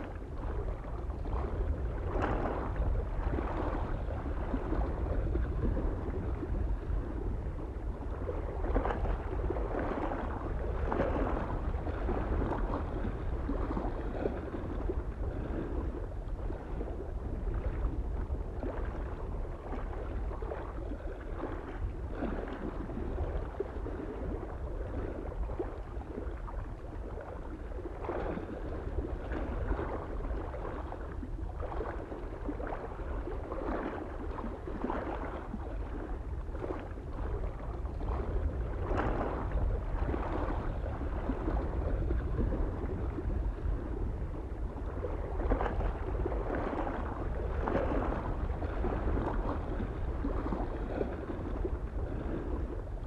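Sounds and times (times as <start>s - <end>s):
waves lapping against shore: 0.0s - 53.0s
wind rumble on microphone: 0.0s - 53.0s.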